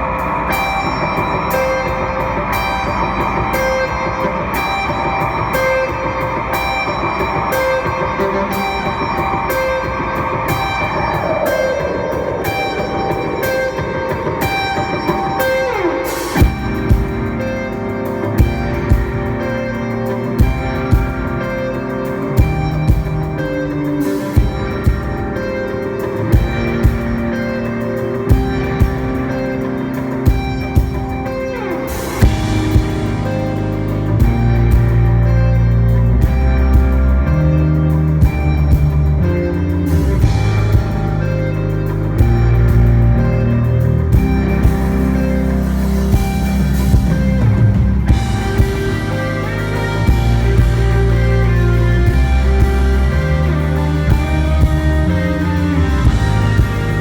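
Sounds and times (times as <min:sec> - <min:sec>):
drums hitting hard: 0:00.0 - 0:57.0
high ticking beat: 0:00.0 - 0:57.0
sustained guitar: 0:00.0 - 0:57.0.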